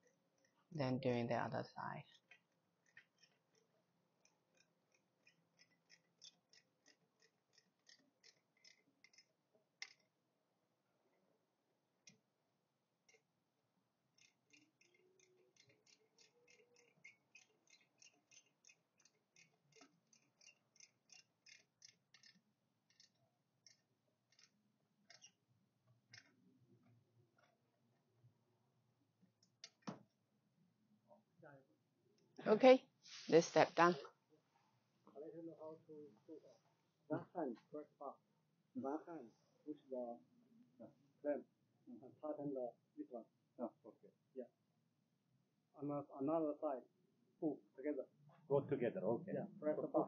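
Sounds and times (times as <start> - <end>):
tool tightening screws clicking: 14.2 - 24.5.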